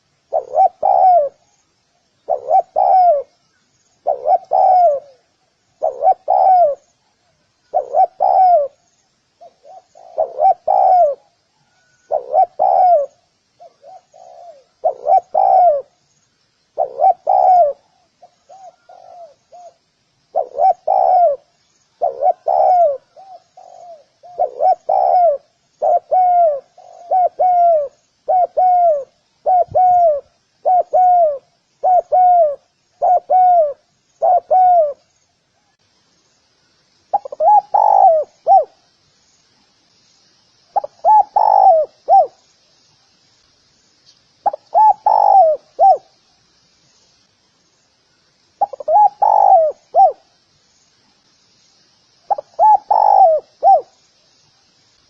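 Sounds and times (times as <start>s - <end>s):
dove cooing: 0.0s - 1.5s, 2.3s - 3.3s, 4.0s - 6.9s, 7.6s - 16.0s, 16.8s - 35.1s, 37.1s - 38.8s, 40.8s - 42.4s, 44.4s - 46.1s, 48.6s - 50.3s, 52.3s - 54.0s.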